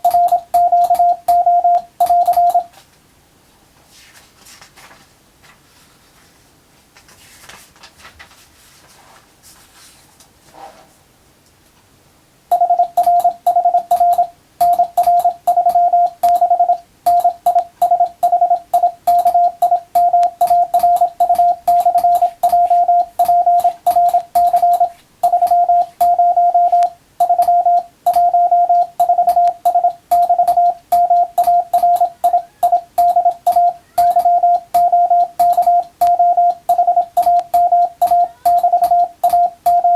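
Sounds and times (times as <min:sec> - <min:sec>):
morse code beeps: 0:00.0 - 0:02.7, 0:12.5 - 0:39.9.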